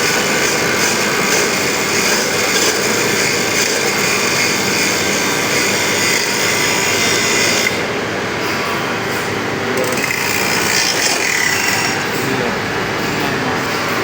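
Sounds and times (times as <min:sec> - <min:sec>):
power tool sharpening saw blade: 0:00.0 - 0:07.8, 0:09.8 - 0:12.1.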